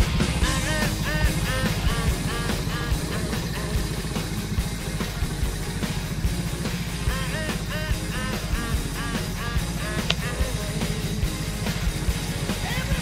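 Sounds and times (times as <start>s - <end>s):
fast driving drum beat: 0.0s - 13.0s
lead guitar bending notes: 0.0s - 13.0s
rock music: 0.0s - 13.0s.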